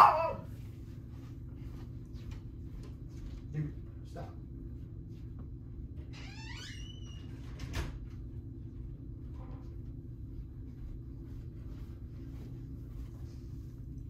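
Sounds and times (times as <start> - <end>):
low room hum: 0.0 - 14.0
door creaking: 6.1 - 8.0
door shutting with a click: 7.2 - 8.1.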